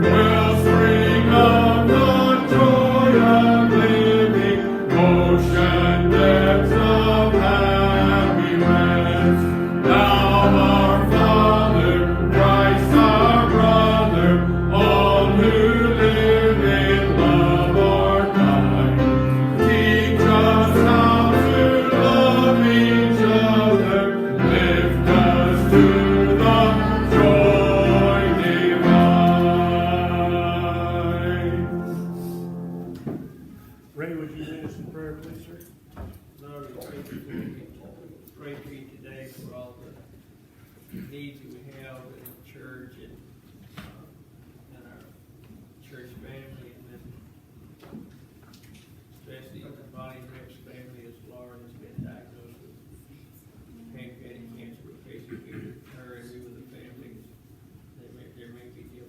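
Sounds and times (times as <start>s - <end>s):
group singing a hymn: 0.0s - 33.3s
instrumental accompaniment: 0.0s - 33.5s.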